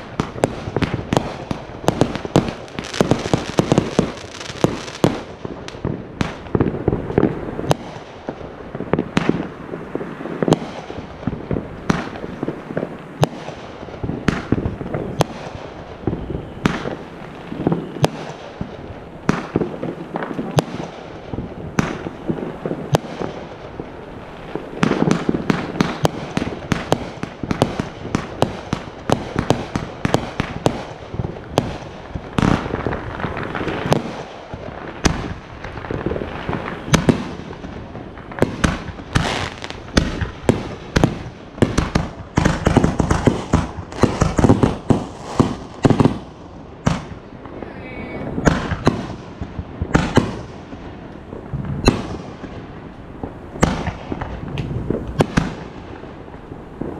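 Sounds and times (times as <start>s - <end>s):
fireworks bangs: 0.0s - 56.9s
fireworks crackling: 0.0s - 56.9s.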